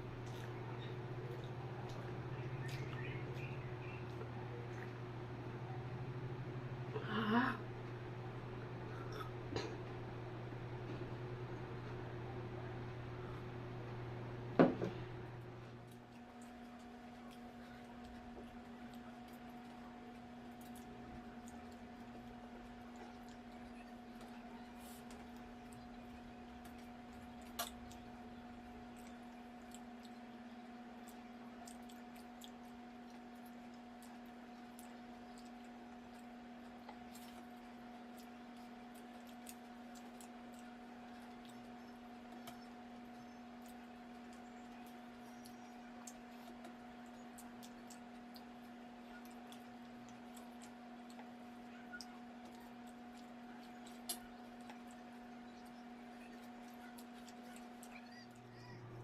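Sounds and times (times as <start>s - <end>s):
steady low hum: 0.0s - 59.0s
person chewing food: 15.7s - 58.9s.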